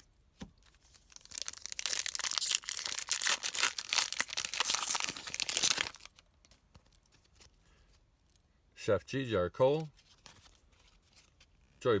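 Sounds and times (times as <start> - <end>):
plastic wrapper tearing and crumpling: 0.9 - 6.6.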